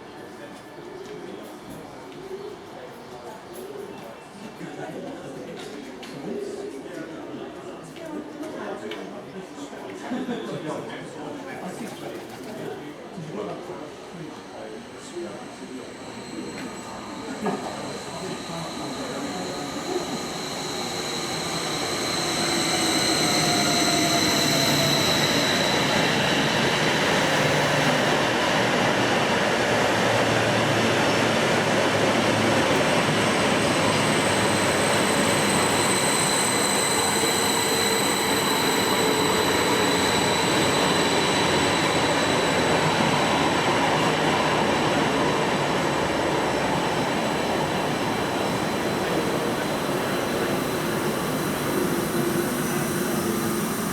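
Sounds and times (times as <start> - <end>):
high-pitched whining tones: 15.5 - 28.4, 32.8 - 53.9
train wheels rumbling on rails: 15.9 - 53.9.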